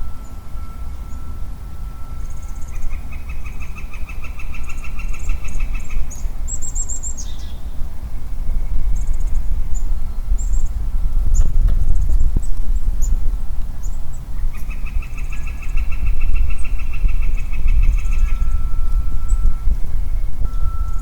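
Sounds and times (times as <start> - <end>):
steady low rumble: 0.0 - 21.0
small birds chirping: 2.2 - 21.0.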